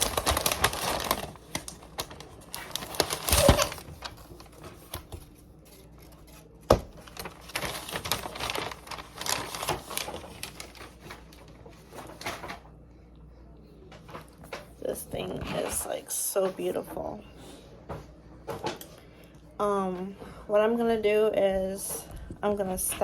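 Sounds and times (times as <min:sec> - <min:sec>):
packaging rustling: 0:00.0 - 0:12.6.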